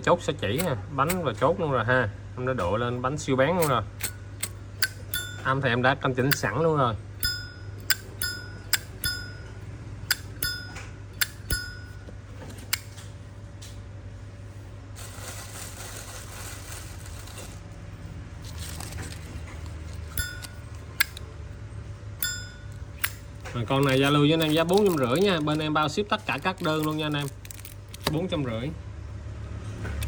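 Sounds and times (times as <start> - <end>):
lighter lid clicking with ping: 3.6 - 5.4, 10.1 - 11.9, 22.2 - 23.2.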